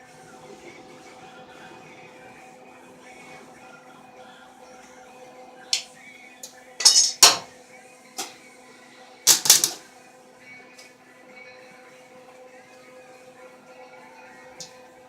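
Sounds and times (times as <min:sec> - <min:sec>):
metal tools clanking together: 0:06.8 - 0:07.5.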